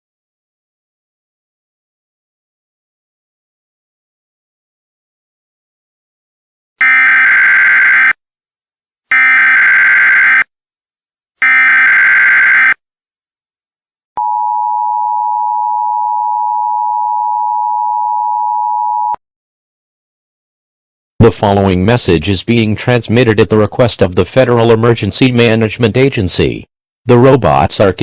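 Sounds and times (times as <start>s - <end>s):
two-tone alarm: 6.8s - 8.2s, 9.1s - 10.5s, 11.4s - 12.8s, 14.2s - 19.2s.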